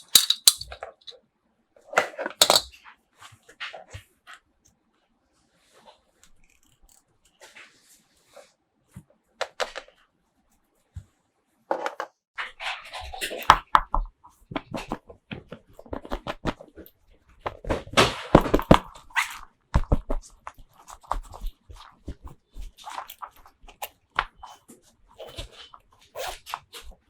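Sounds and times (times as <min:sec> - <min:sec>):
plastic toy pieces clicking: 0:00.0 - 0:01.1, 0:02.4 - 0:02.7.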